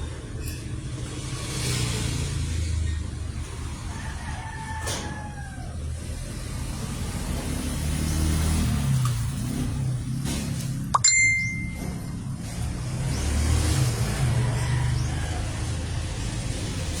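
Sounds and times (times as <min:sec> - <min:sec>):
road traffic rumble: 0:00.0 - 0:17.0
sharp metallic clink: 0:11.0 - 0:12.1.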